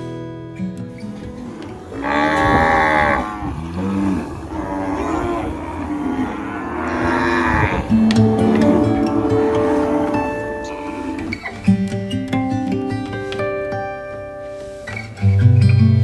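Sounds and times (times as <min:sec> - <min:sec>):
cow mooing: 0:06.8 - 0:11.5.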